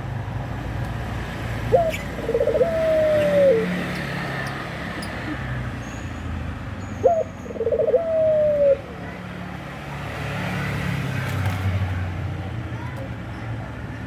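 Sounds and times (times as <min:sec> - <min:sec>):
dove cooing: 0:01.7 - 0:03.9, 0:07.0 - 0:08.9.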